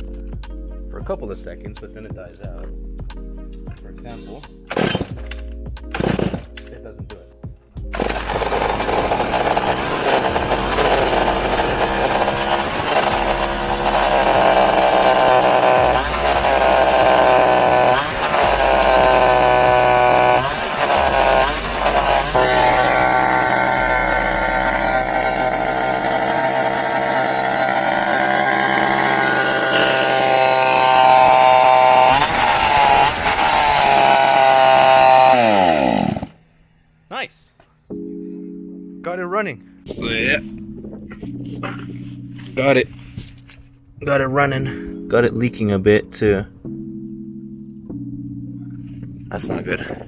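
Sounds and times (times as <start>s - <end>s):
two-stroke engine revving: 4.7s - 5.2s, 6.0s - 6.5s, 7.9s - 36.4s.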